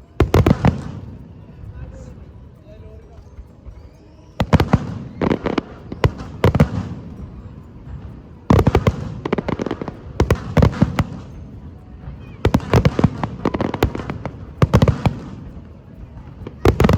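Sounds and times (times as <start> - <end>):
fireworks banging and crackling: 0.0 - 2.1, 4.4 - 16.9.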